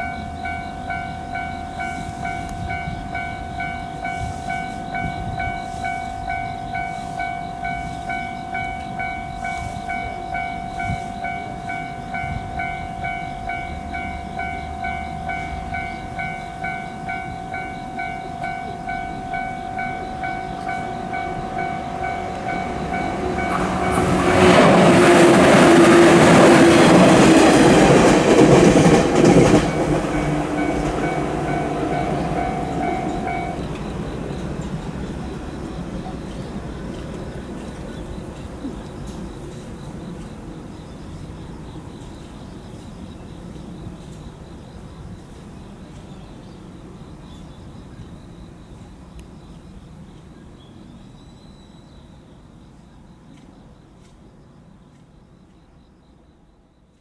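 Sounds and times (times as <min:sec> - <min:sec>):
level crossing electronic bell: 0:00.0 - 0:25.8, 0:29.2 - 0:33.8
train passing over crossing: 0:00.0 - 0:53.3.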